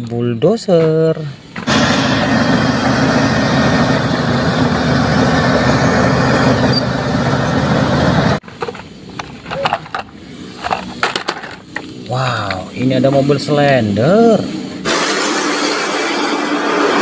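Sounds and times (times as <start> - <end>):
bulldozer engine running: 1.6 - 12.1
plastic toys clicking: 8.4 - 11.8.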